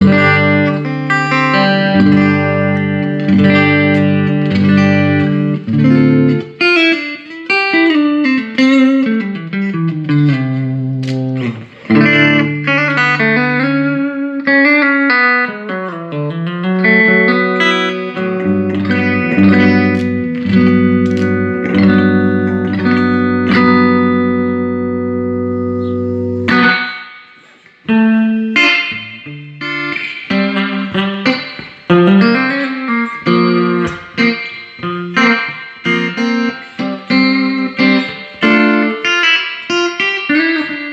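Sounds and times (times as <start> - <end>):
electric guitar playing: 0.0 - 40.9.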